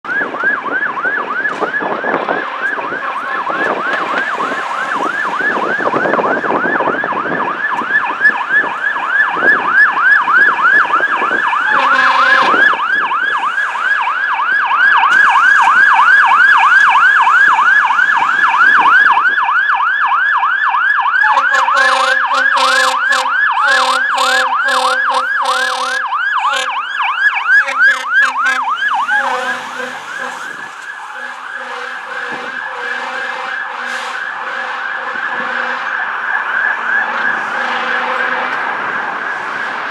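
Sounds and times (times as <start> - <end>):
fire engine siren yelping: 0.0 - 39.9
horn blasts: 2.1 - 5.0, 11.5 - 12.9, 21.2 - 26.9, 27.5 - 36.1, 36.8 - 38.8.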